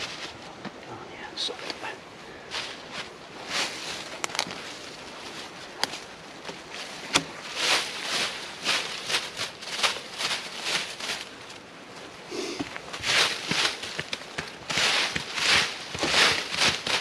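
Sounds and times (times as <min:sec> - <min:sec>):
footsteps on leaf litter: 0:02.5 - 0:17.0
twigs snapping: 0:04.1 - 0:04.7, 0:12.6 - 0:17.0.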